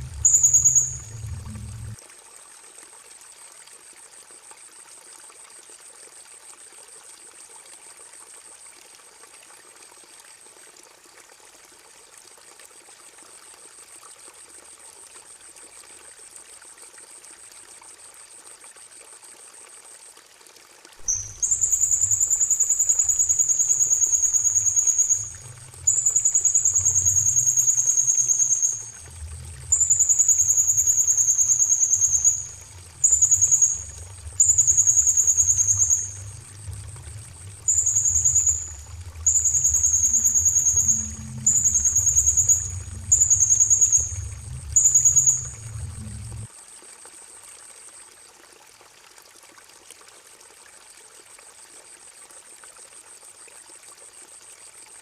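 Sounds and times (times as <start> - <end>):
buzzing songbird trill: 0.0 - 2.0, 21.0 - 46.4
water trickling: 0.0 - 54.4.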